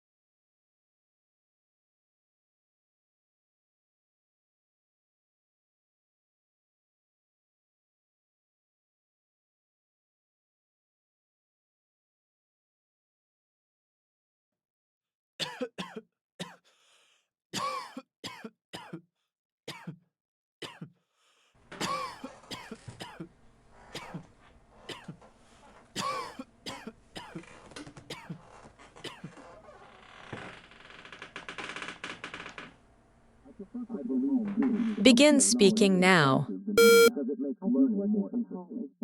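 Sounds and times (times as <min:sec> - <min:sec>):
people coughing: 0:15.4 - 0:16.6, 0:17.6 - 0:19.0, 0:21.8 - 0:23.3, 0:26.0 - 0:27.5, 0:28.1 - 0:28.4.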